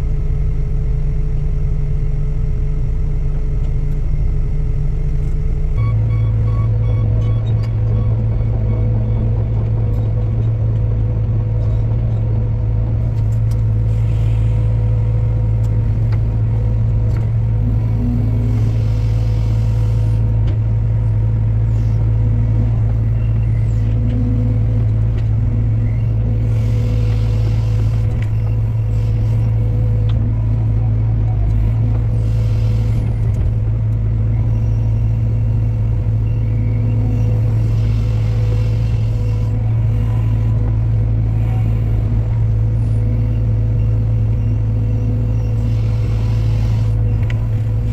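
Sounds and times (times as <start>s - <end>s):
diesel engine droning: 0.0s - 47.9s.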